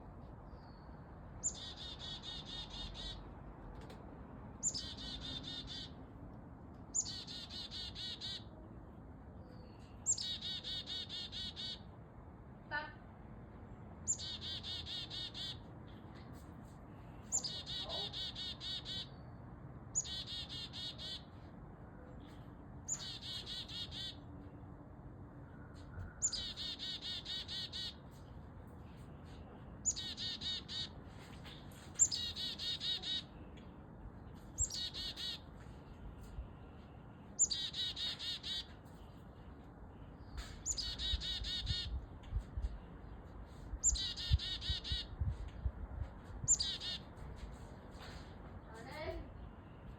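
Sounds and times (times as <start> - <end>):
bird singing with trill: 0.6 - 3.2, 4.6 - 5.9, 7.0 - 8.4, 9.5 - 11.8, 14.1 - 15.6, 17.3 - 19.2, 20.0 - 21.2, 26.2 - 28.0, 29.8 - 30.9, 32.0 - 33.3, 34.6 - 35.4, 37.4 - 38.7, 40.2 - 42.0, 43.8 - 45.1, 46.5 - 47.0.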